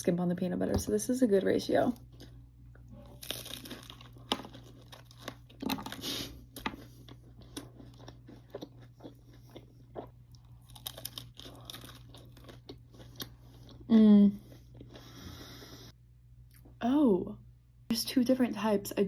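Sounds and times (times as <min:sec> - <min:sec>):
chewing and crunching ice cream cone: 0:02.0 - 0:15.2.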